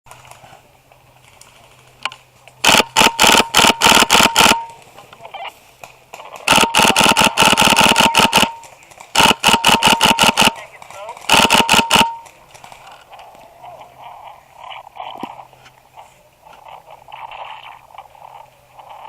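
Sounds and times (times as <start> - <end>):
steady whine: 0.1 - 5.9, 6.5 - 17.1
airsoft gun rapid shots: 2.6 - 4.8, 6.4 - 12.4.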